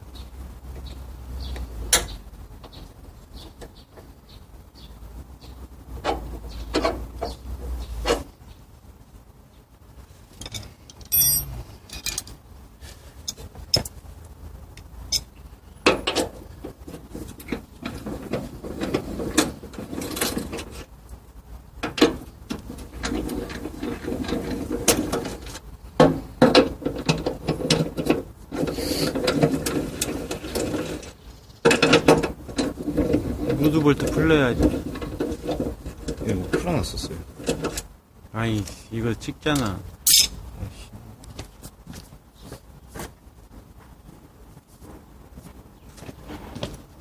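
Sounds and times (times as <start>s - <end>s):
tools and metal parts clicking: 10.4s - 12.4s, 15.1s - 15.3s, 40.0s - 40.4s.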